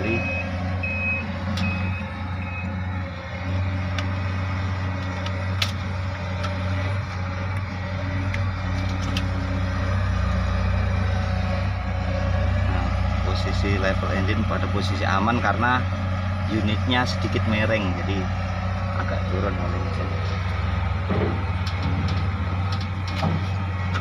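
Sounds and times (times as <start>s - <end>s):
reversing alarm beeping: 0.0s - 2.8s
heavy vehicle engine droning: 0.0s - 24.0s.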